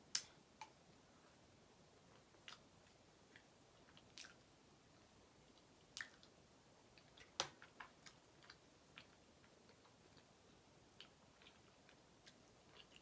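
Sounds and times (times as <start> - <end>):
mouth clicks and smacks chewing: 2.2 - 4.4, 5.5 - 6.4, 10.9 - 13.0.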